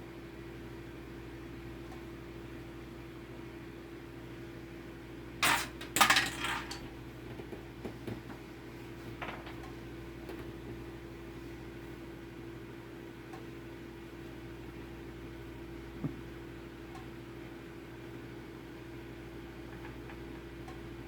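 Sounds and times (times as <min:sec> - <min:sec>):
small hard parts clattering: 0:05.4 - 0:06.9.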